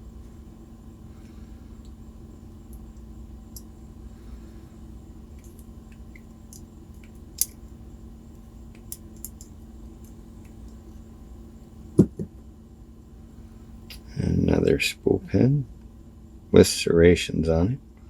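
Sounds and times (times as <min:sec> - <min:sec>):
steady low hum: 0:00.0 - 0:18.0
small tools clicking and tapping: 0:08.7 - 0:10.8.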